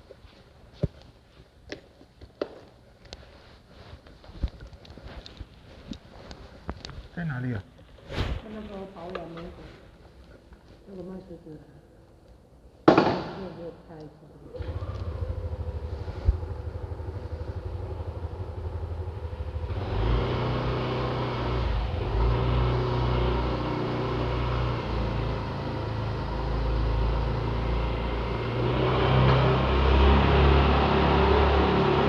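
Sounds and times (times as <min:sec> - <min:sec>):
road noise: 0:14.6 - 0:32.0
vehicle engine pulsing: 0:14.6 - 0:32.0.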